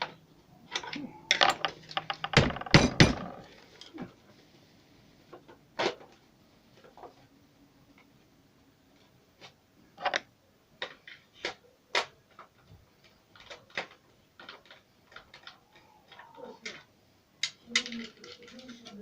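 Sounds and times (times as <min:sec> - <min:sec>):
small hard parts clicking: 0:00.0 - 0:04.1, 0:09.0 - 0:19.0.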